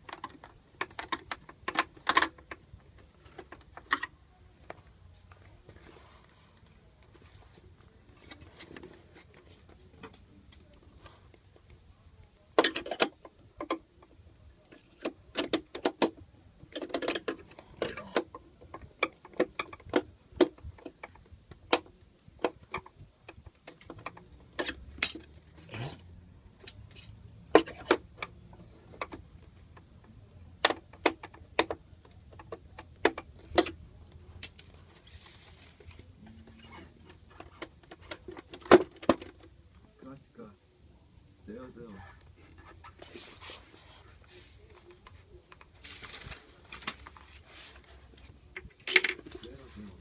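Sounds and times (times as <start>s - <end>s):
small parts and tools clicking: 12.6s - 28.3s.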